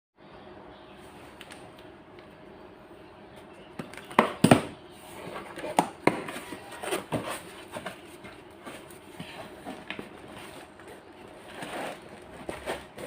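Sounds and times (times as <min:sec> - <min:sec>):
faint steady hum: 0:00.2 - 0:13.0
rustling: 0:05.0 - 0:13.0.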